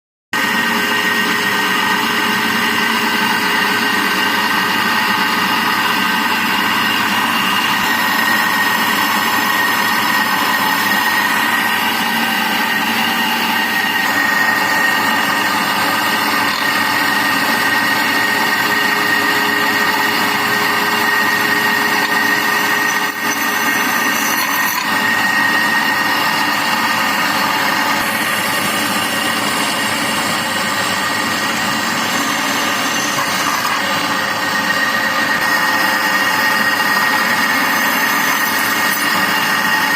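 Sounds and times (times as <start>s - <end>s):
electric drill whining: 0.4s - 39.9s.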